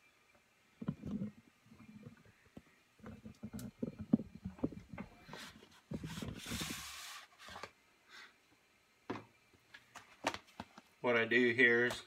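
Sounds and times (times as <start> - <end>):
rustling hiss: 0.0 - 8.7.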